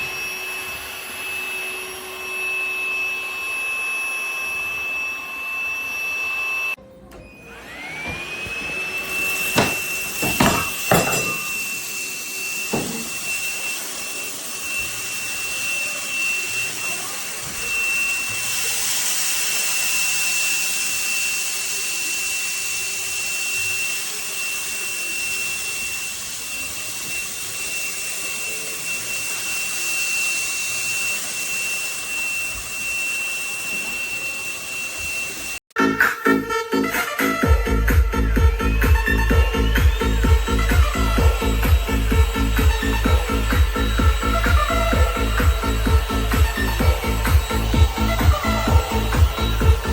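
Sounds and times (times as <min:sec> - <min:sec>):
vacuum motor whine: 0:00.0 - 0:49.9
sharp knocks: 0:09.5 - 0:11.5.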